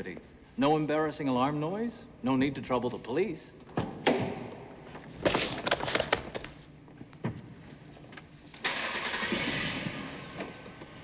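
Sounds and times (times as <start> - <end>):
sharp knocks and cracks: 5.2 - 6.6.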